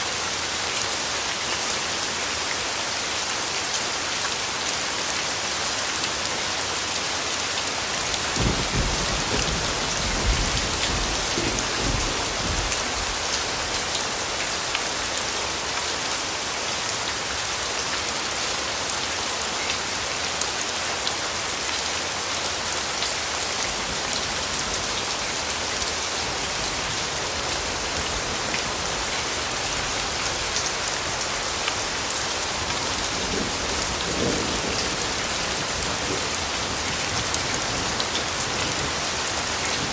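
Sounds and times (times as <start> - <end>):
heavy rain falling: 0.0 - 39.9
low thunder rumbling: 8.3 - 13.2.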